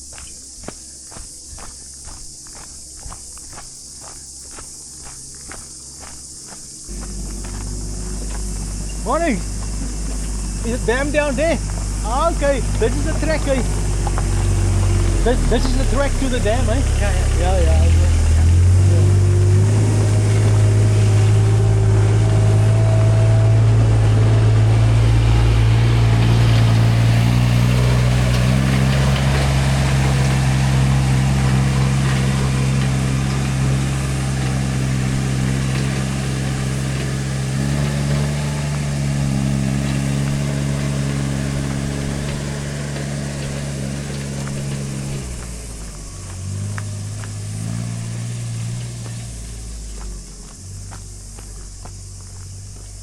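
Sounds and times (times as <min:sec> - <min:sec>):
engine revving: 0:06.9 - 0:53.0.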